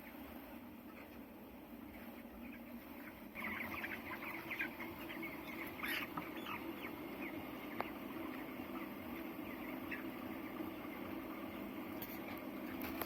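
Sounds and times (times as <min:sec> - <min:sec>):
chicks peeping: 0:00.0 - 0:13.0.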